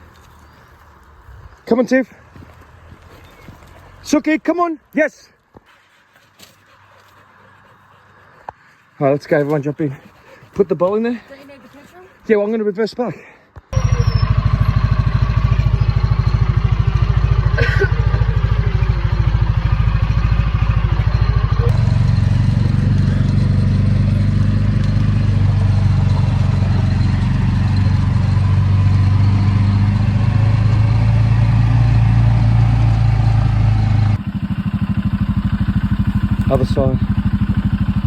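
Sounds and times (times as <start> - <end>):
farm vehicle engine running: 13.7 - 38.0.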